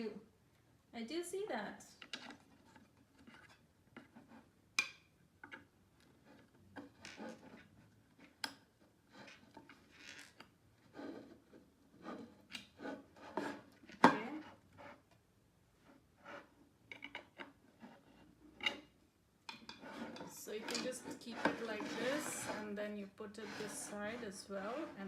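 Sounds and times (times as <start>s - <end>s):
wooden panels rubbing and scraping: 6.1s - 8.4s, 9.1s - 15.1s, 19.6s - 25.0s.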